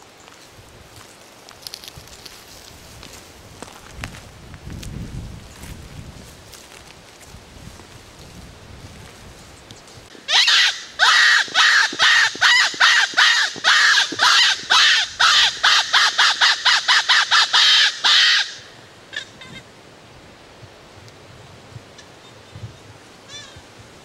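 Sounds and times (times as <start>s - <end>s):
predator call squealing: 10.2s - 19.6s.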